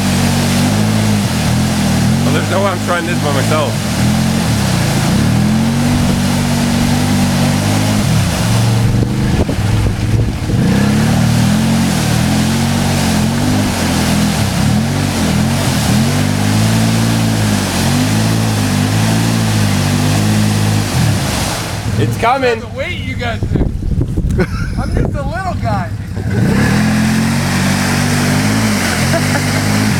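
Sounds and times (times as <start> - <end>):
quad bike engine revving: 0.0 - 22.3, 25.9 - 29.9.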